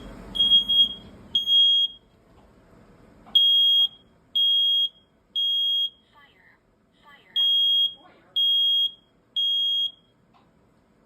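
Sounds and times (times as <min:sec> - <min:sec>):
smoke alarm beeping: 0:00.0 - 0:02.1, 0:03.4 - 0:06.0, 0:07.4 - 0:10.2.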